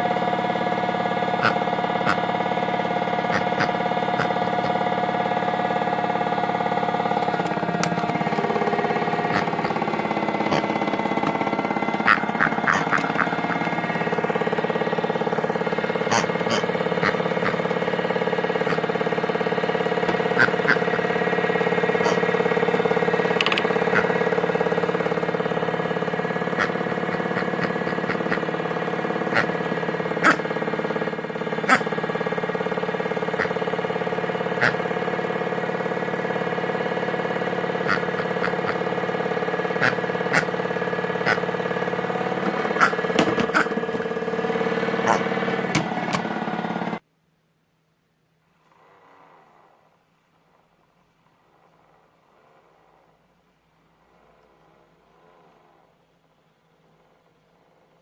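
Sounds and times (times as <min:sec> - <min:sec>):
toy washing machine motor hum: 0:00.0 - 0:47.0
clicks and knocks: 0:23.3 - 0:23.7.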